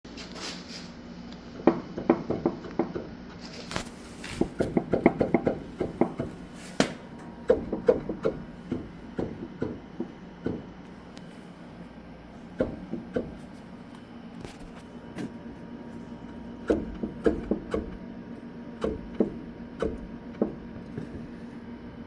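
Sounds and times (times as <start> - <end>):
steady low hum: 0.1 - 22.0
wheel bearing clunking: 4.2 - 11.0.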